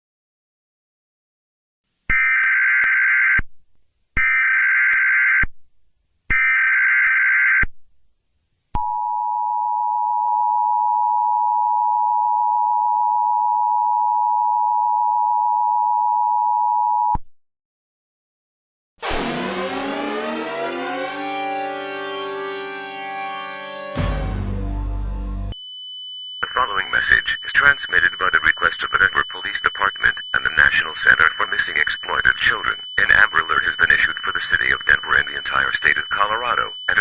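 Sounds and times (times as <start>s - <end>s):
digital data header bursts: 26.4s - 37.0s
two-tone attention signal: 26.4s - 37.0s.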